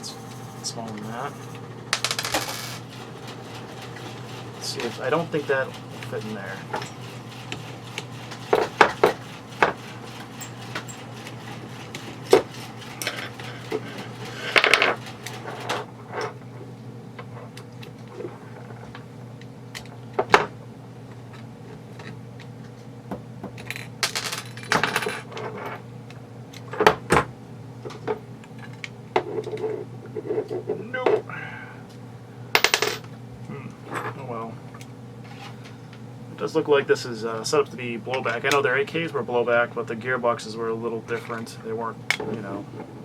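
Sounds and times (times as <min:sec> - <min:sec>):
scraping rattles: 0:00.0 - 0:16.5.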